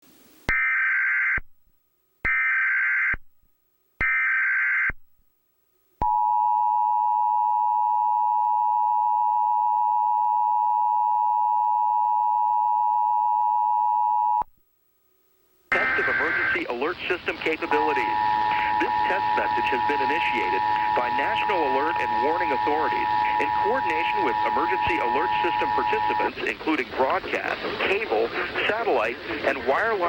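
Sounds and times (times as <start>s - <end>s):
digital header data bursts: 15.7s - 30.0s
steady two-tone attention signal: 15.7s - 30.0s.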